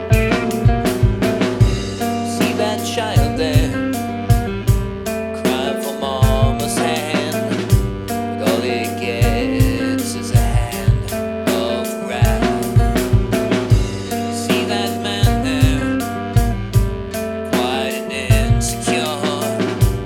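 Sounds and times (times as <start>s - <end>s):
person singing: 0.0s - 20.0s
rock song: 0.0s - 20.0s
kick drum beat: 0.2s - 2.0s, 12.3s - 14.1s, 15.3s - 17.1s.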